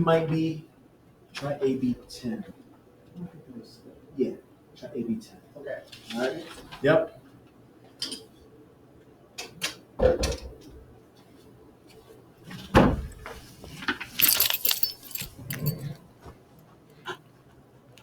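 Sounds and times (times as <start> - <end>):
bright metallic jingle: 14.2 - 16.0.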